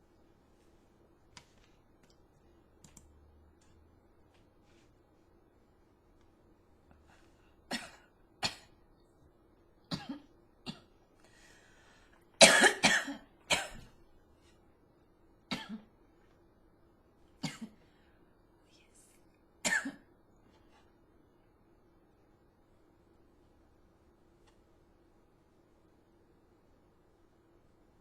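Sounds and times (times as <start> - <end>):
person coughing: 7.7 - 8.7, 12.4 - 13.8, 19.6 - 20.1.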